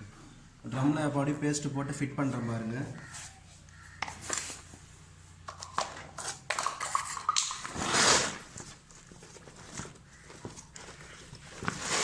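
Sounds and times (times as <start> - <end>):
scraping rustle: 7.6 - 12.0.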